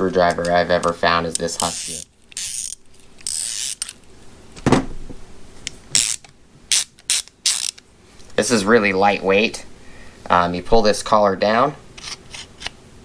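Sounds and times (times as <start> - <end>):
screwdriver ratchet clicking: 1.4 - 3.8.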